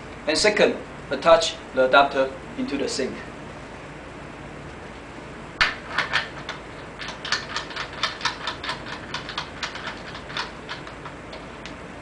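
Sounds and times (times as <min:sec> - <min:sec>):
metallic clicks and ticks: 0:06.0 - 0:11.8.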